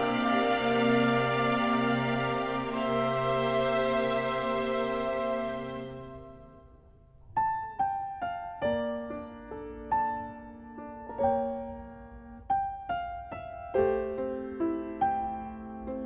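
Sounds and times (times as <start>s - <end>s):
sustained chord: 0.0s - 6.8s
soft piano melody: 0.0s - 16.0s.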